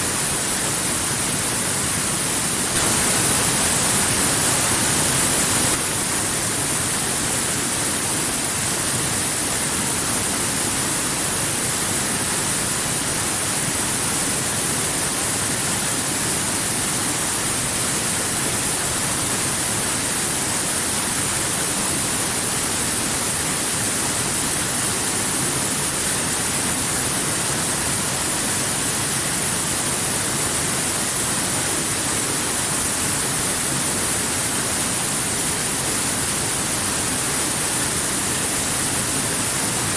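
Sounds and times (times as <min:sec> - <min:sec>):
waterfall rushing: 0:00.0 - 0:09.4.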